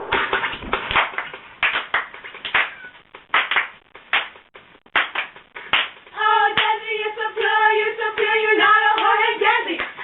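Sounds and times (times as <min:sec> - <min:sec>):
hand claps in rhythm: 0:00.0 - 0:06.8, 0:09.0 - 0:10.0.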